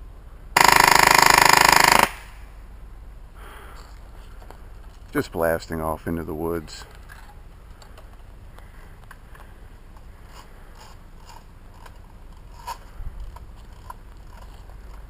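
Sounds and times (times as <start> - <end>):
faint irregular clicks: 6.9 - 15.0.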